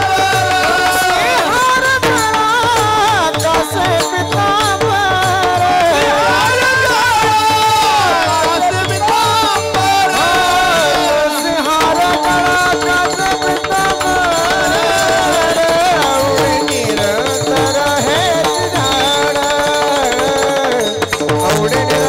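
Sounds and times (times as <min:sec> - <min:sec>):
drum and percussion rhythm: 0:00.0 - 0:22.0
ornamented devotional melody: 0:00.0 - 0:22.0.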